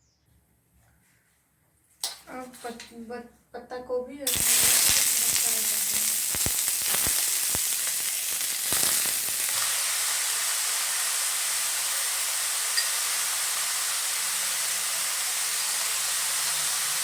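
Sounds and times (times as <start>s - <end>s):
cabbage sizzling in hot oil: 4.3s - 17.0s.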